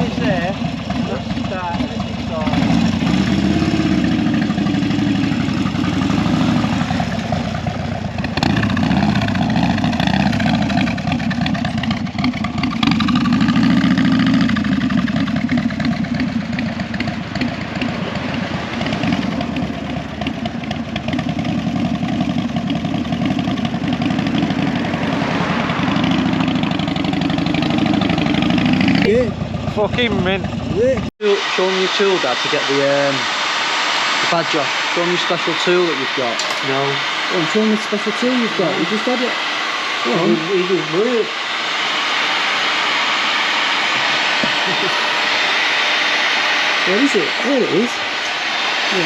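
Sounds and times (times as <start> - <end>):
motorcycle engine revving: 0.0 - 49.0.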